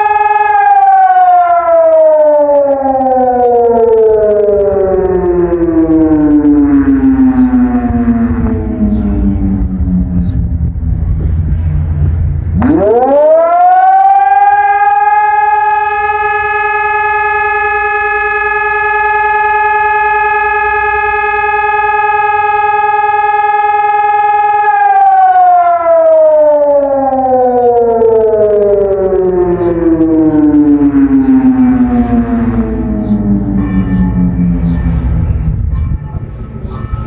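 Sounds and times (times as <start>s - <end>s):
fire siren long tone: 0.0s - 37.0s.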